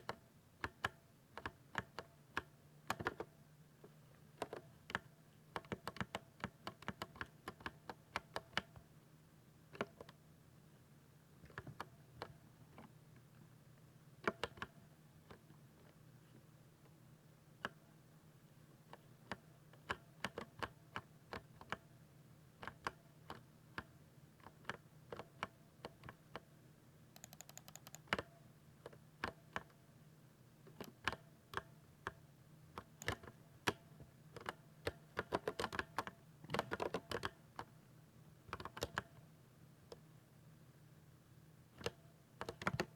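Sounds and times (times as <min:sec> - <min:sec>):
mechanical keyboard typing: 0:27.2 - 0:28.3, 0:33.0 - 0:33.3.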